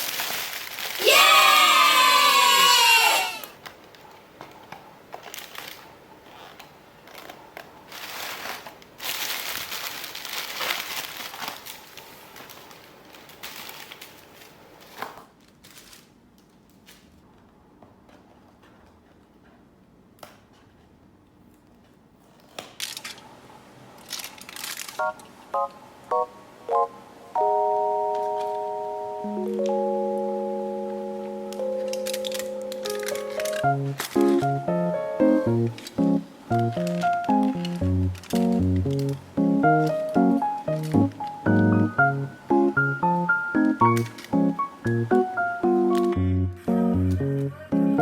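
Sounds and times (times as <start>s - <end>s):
plastic wrapping crinkling: 0.0s - 2.6s, 3.6s - 17.4s, 21.5s - 23.3s, 23.9s - 25.4s, 31.2s - 46.1s.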